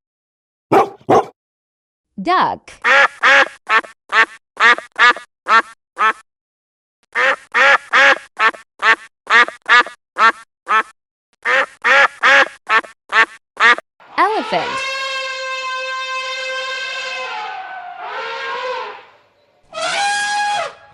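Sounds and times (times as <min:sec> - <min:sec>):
duck quacking: 0:00.7 - 0:01.3, 0:02.8 - 0:06.2, 0:07.1 - 0:13.8.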